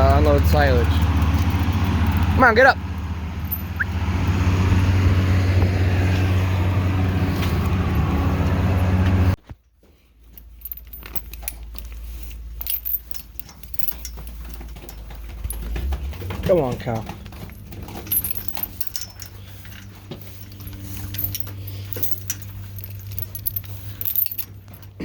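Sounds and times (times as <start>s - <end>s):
tractor engine running: 0.0s - 9.4s, 10.3s - 25.0s
scattered clicks and rattles: 0.1s - 3.8s, 10.3s - 25.0s.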